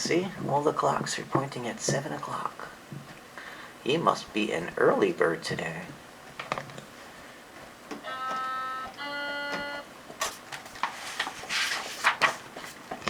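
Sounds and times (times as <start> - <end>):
two-note cuckoo chime: 8.0 - 9.9
paper book page turning: 10.2 - 13.0.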